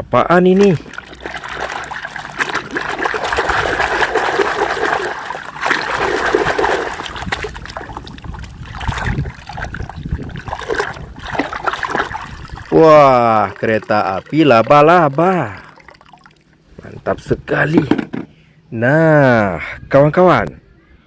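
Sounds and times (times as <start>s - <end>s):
water splashing and trickling: 0.4s - 17.0s.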